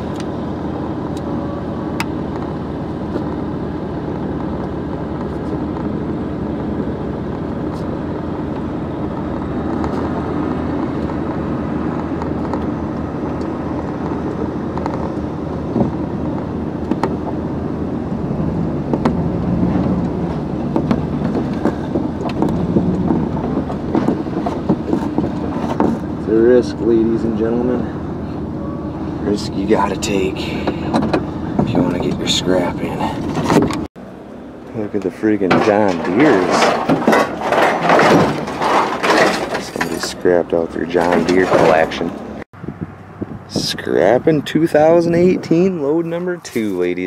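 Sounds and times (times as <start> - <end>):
truck engine and road noise: 0.0 - 47.0
scrap metal clicks and knocks: 35.5 - 40.2.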